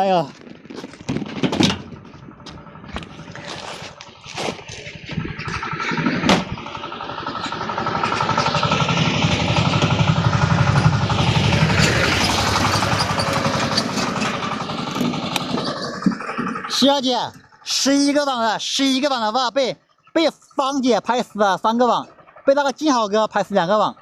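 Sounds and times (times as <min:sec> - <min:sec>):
engine revving up: 0:02.3 - 0:17.7
sharp knocks: 0:05.5 - 0:06.6.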